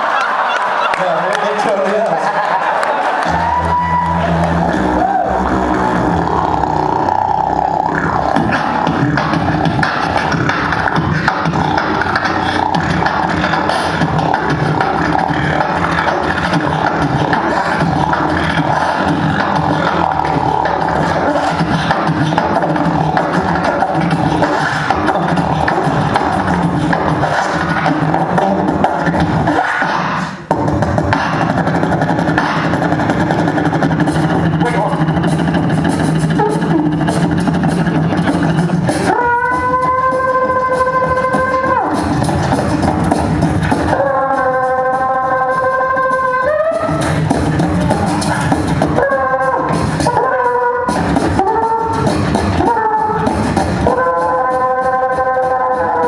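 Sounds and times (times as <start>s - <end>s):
vocal percussion beatboxing: 0.0s - 56.0s
sung bass tone: 3.3s - 29.3s.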